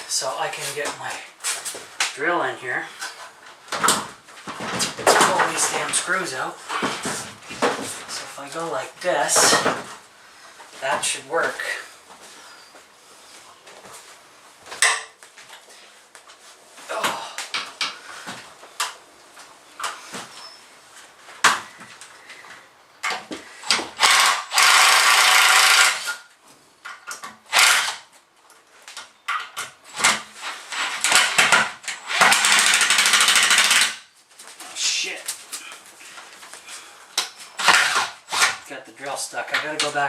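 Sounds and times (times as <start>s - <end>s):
knocks and clatter: 3.7s - 6.0s
power drill removing screws: 23.0s - 26.2s, 27.1s - 28.1s, 29.9s - 34.0s, 37.6s - 38.6s.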